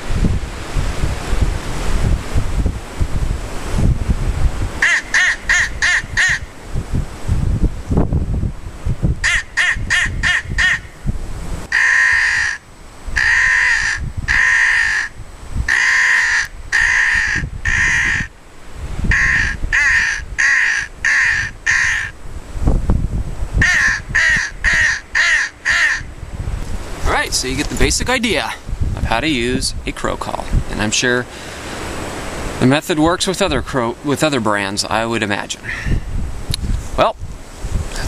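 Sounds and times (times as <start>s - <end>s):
crow call caws: 4.8s - 6.5s, 9.2s - 10.9s, 11.7s - 12.6s, 13.2s - 18.3s, 19.1s - 22.2s, 23.6s - 26.1s, 35.6s - 36.1s.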